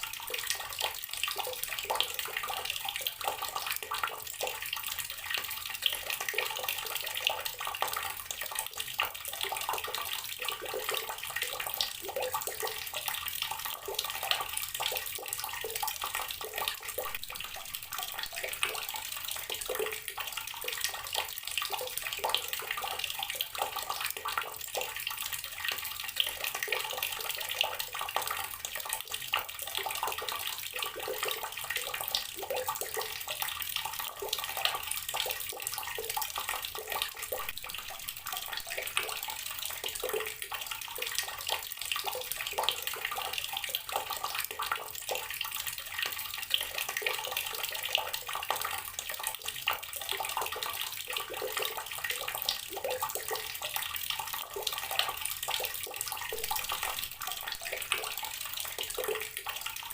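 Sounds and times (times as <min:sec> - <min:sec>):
tap water pouring into water: 0:00.0 - 0:59.9.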